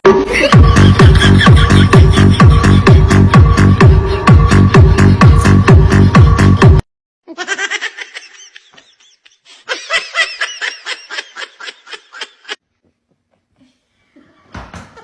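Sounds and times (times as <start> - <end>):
high-pitched laughter: 0.3 - 6.6, 7.3 - 12.6.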